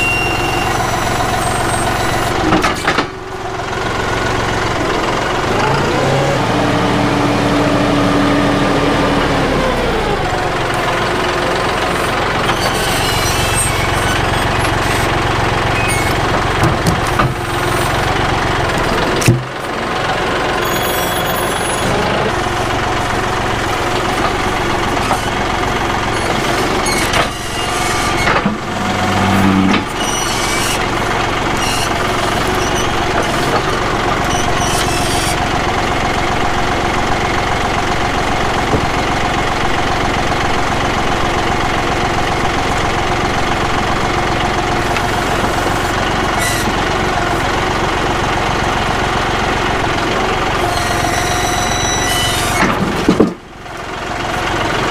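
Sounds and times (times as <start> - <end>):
tractor diesel engine running: 0.0 - 54.9
steady higher whine: 20.6 - 32.4.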